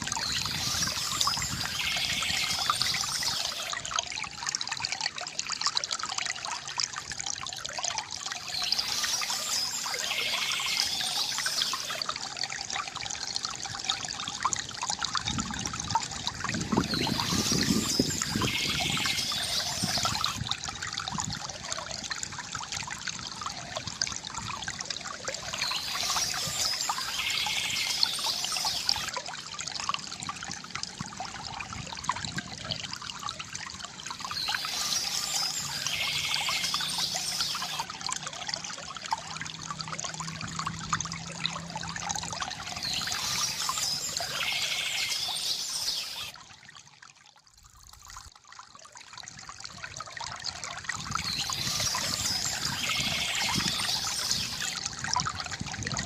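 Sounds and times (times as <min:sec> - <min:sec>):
river water gurgling: 0:00.0 - 0:56.0
birds chirping: 0:00.2 - 0:03.7, 0:08.4 - 0:12.0, 0:16.8 - 0:20.4, 0:25.5 - 0:29.1, 0:34.2 - 0:37.8, 0:42.6 - 0:46.3, 0:51.2 - 0:54.8.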